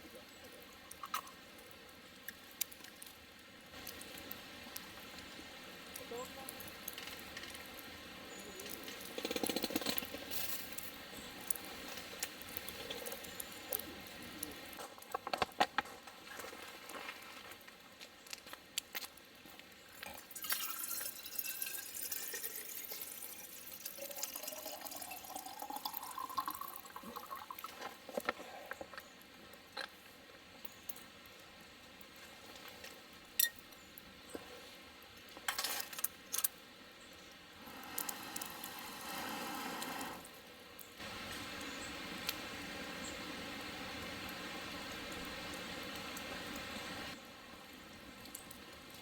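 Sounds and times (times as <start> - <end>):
liquid pouring into container: 20.4 - 27.8.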